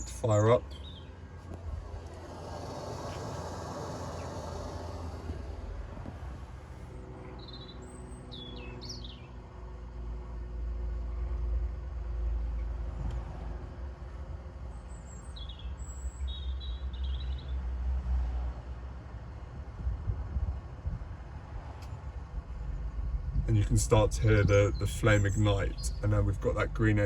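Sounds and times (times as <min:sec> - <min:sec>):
small birds chirping: 0:00.0 - 0:05.3, 0:06.4 - 0:09.4, 0:14.7 - 0:17.6, 0:23.9 - 0:27.0
low rumble and hum: 0:00.0 - 0:27.0.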